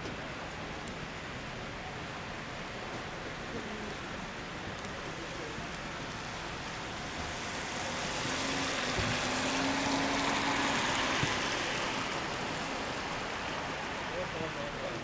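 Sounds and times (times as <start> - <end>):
steady rain on street: 0.1 - 15.0
car tyres hissing on wet road: 4.7 - 15.0.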